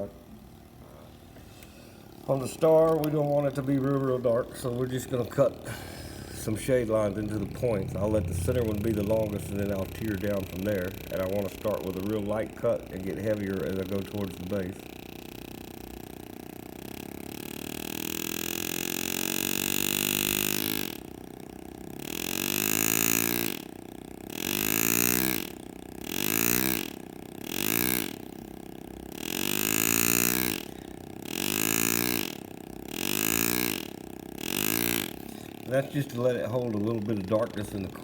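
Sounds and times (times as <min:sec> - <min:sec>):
air graver buzzing: 0:00.0 - 0:38.0.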